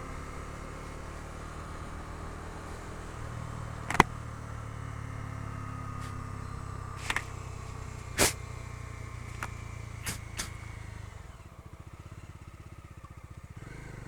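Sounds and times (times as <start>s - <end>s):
motorcycle engine humming: 0.0s - 14.0s
sharp clicks: 3.9s - 4.1s, 7.0s - 7.3s, 8.0s - 8.4s, 9.3s - 10.6s.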